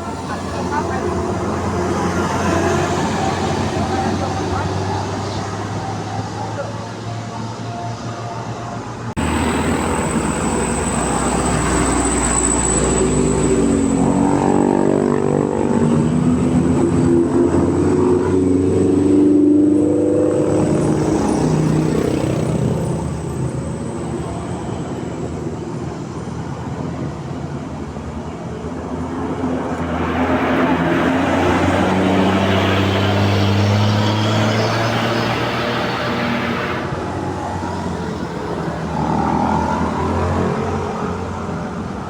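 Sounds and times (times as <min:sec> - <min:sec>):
bus engine passing: 0:00.0 - 0:42.0
musical bus horn tune: 0:30.1 - 0:36.9.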